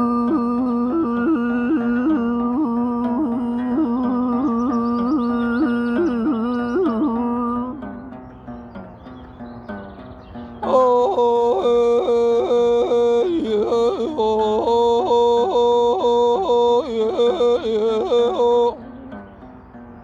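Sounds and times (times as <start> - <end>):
person singing yodel-like: 0.0 - 7.8, 10.6 - 18.9
plucked string accompaniment: 0.0 - 20.0.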